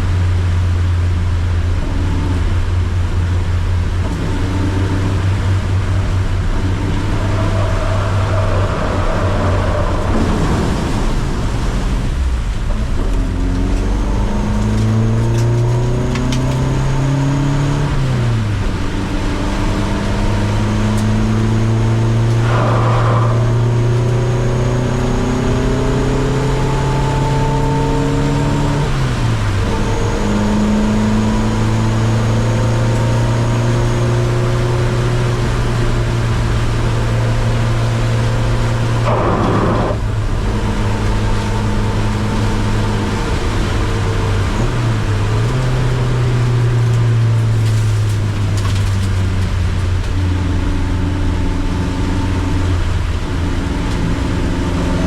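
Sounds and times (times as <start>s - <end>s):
heavy rain: 0.0s - 17.2s, 34.3s - 55.0s
car engine running: 0.0s - 55.0s
wet road noise: 0.0s - 55.0s.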